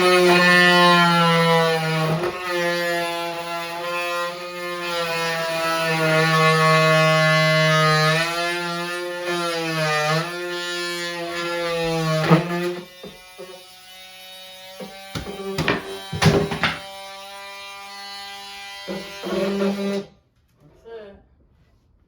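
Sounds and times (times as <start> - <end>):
sharp knocks: 14.8 - 16.9.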